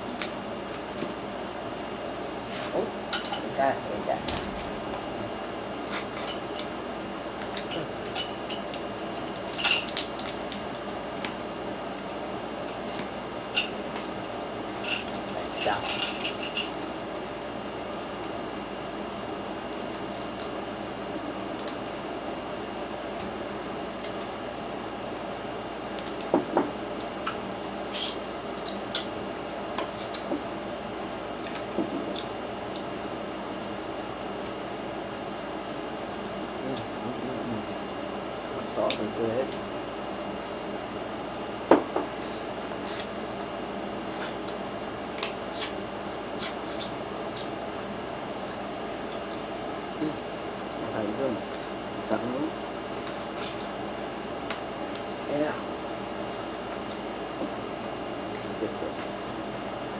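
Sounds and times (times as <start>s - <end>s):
low room hum: 0.0s - 59.9s
crab shells cracking: 9.8s - 10.8s.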